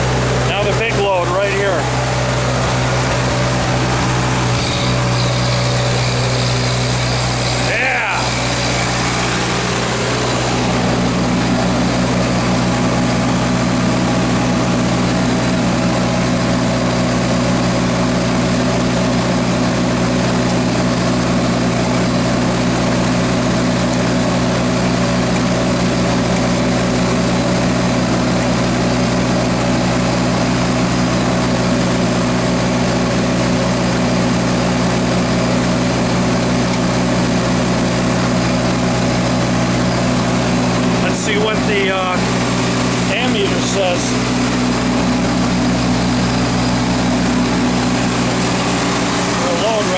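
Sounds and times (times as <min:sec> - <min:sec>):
generator engine running: 0:00.0 - 0:49.9.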